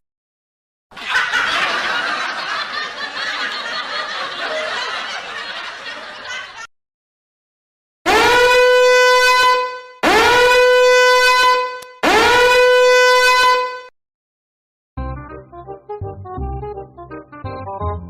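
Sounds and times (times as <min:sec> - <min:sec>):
people laughing: 0:00.9 - 0:06.7.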